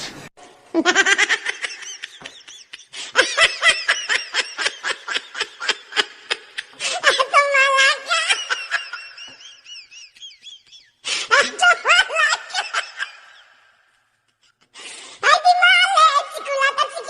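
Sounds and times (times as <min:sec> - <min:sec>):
high-pitched laughter: 0:00.7 - 0:13.7.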